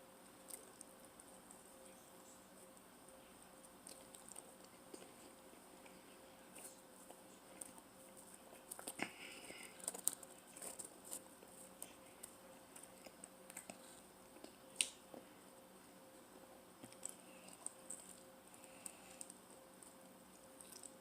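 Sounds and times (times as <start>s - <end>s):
person chewing: 3.6s - 15.3s, 16.8s - 21.0s.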